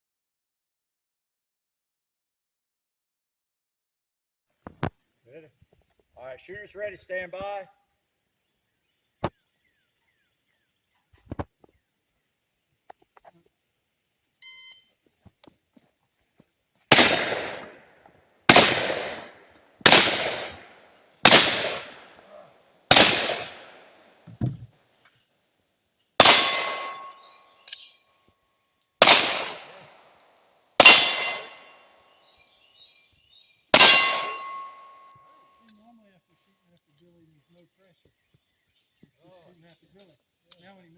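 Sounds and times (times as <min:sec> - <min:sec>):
shot timer beep: 0:14.4 - 0:15.0
gunshots: 0:16.9 - 0:17.9, 0:18.5 - 0:24.4, 0:26.2 - 0:27.2, 0:29.0 - 0:30.2, 0:30.8 - 0:31.9, 0:33.7 - 0:35.0
steel targets ringing: 0:26.2 - 0:28.0, 0:30.8 - 0:31.9, 0:33.8 - 0:35.6.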